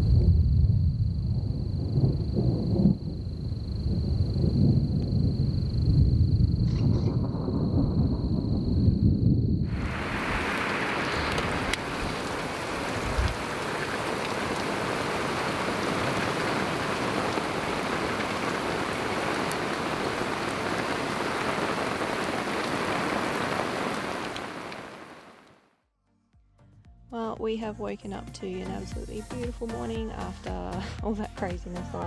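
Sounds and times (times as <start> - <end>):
heavy rain falling: 9.6 - 25.6.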